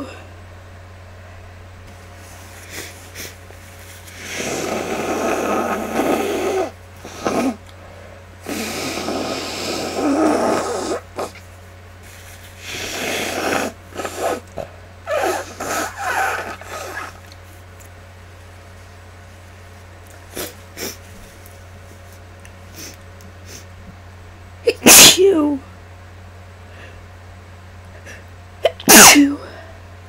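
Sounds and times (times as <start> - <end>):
low electrical hum: 0.0 - 30.0
congested snuffling breathing: 2.2 - 11.4, 12.4 - 17.3, 20.3 - 21.4.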